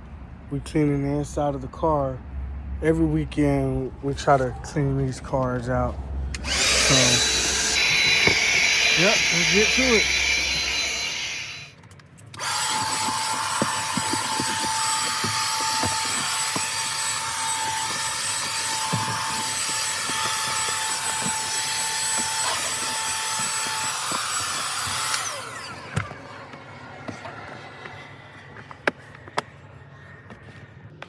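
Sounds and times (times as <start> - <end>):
vacuum cleaner running: 6.4 - 11.7, 12.4 - 29.4.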